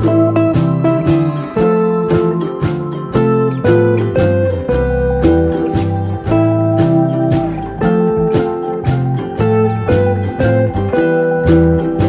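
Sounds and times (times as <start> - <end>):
bass line: 0.0 - 12.0
plucked guitar music: 0.0 - 12.0.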